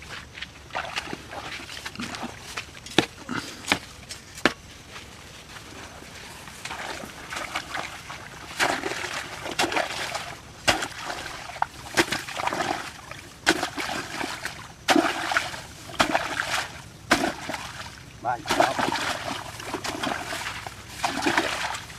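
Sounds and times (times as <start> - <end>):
steady watery hiss: 0.0 - 21.9
sharp water splashes: 0.7 - 2.4, 6.6 - 21.9.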